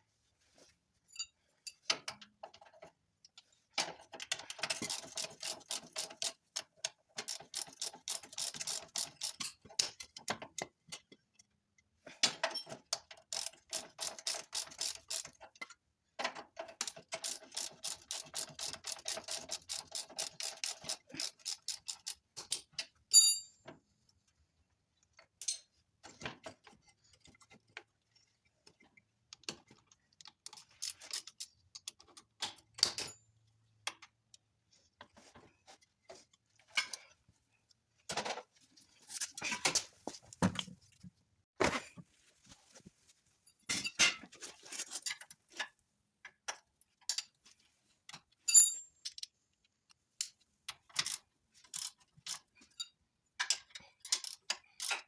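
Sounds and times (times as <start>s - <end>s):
ratchet wrench clicking: 7.3s - 9.4s, 13.3s - 15.4s, 16.8s - 22.6s.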